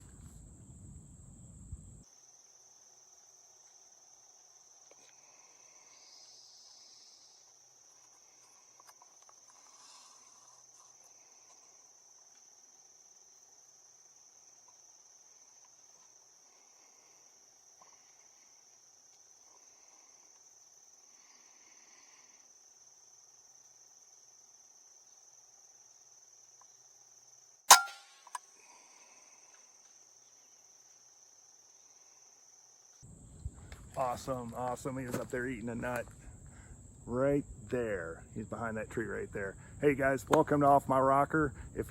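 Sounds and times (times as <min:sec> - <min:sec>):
insects droning in trees: 0:00.0 - 0:41.9
air rifle shot: 0:27.7 - 0:28.1.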